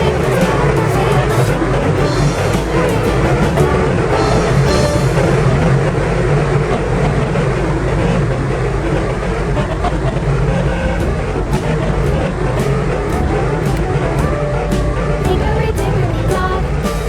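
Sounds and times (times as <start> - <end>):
loud music with drums: 0.0 - 6.0, 11.0 - 17.0.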